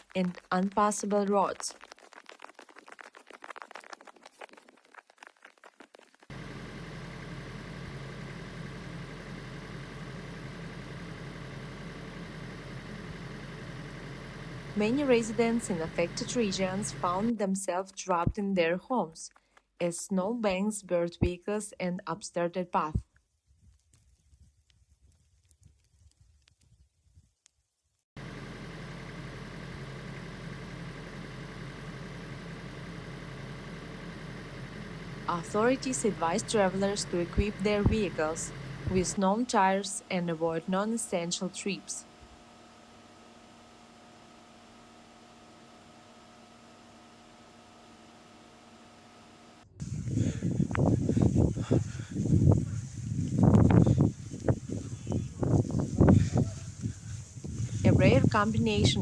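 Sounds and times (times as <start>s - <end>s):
vehicle engine running: 6.3s - 17.4s, 28.2s - 59.0s.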